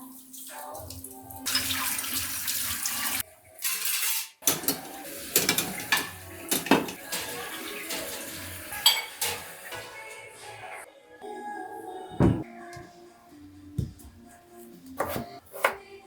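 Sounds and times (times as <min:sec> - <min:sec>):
dishes and utensils clinking: 0:03.6 - 0:10.8.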